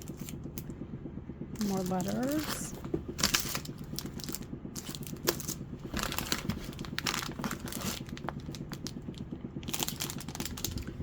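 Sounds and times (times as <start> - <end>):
paper rustling and crinkling: 1.8 - 8.9.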